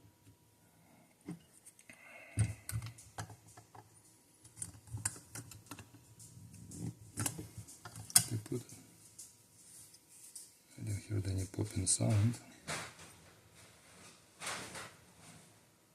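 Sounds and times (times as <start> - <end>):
small clicks and taps on watch: 1.7 - 10.6.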